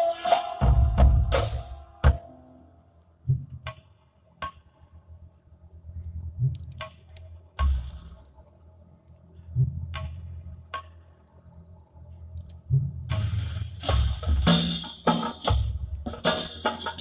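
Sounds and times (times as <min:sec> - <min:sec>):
tambourine shaken with music: 0:00.0 - 0:02.0, 0:13.1 - 0:17.0.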